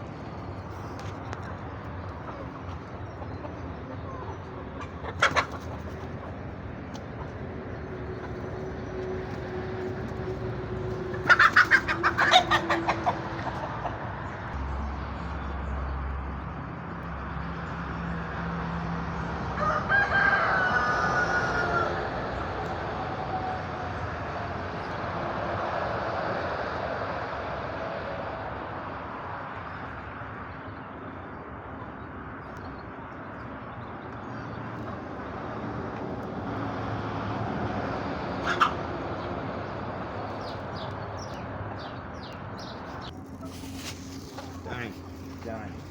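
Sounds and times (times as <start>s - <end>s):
chickens clucking: 0.3s - 14.6s, 31.6s - 45.9s
rooster crowing: 19.5s - 22.2s.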